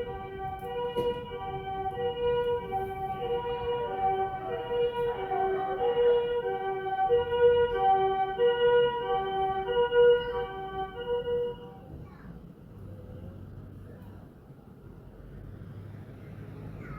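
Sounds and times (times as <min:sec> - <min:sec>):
two-tone emergency siren: 0:00.0 - 0:11.8.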